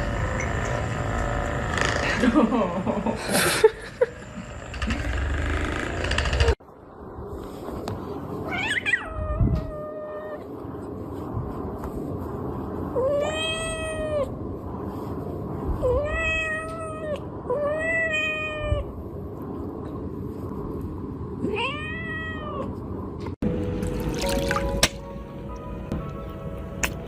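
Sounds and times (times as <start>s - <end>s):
cat meowing: 13.0s - 14.3s, 15.8s - 18.9s, 21.4s - 22.7s.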